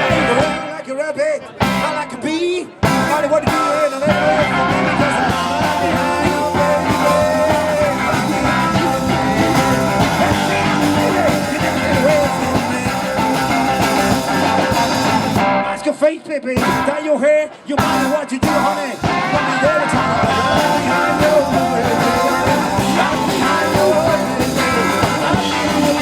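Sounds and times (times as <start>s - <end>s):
live rock band playing: 0.0s - 0.9s, 1.5s - 26.0s
electric guitar: 0.0s - 26.0s.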